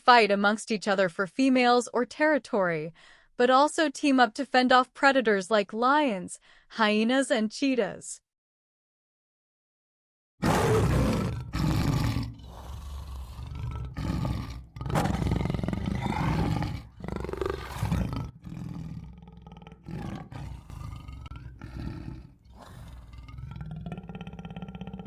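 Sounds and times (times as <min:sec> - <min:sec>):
large animal roaring and growling: 0:10.4 - 0:25.0.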